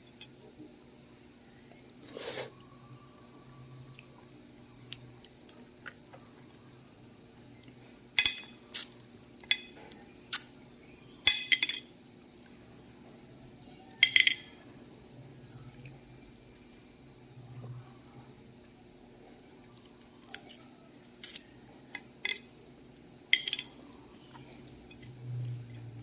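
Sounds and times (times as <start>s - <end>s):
clinks against a ringing dish: 11.3s - 11.9s, 23.3s - 23.8s.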